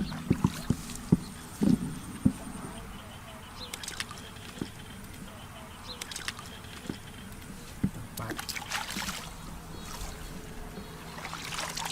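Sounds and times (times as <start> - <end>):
shallow water splashing: 8.2 - 11.9.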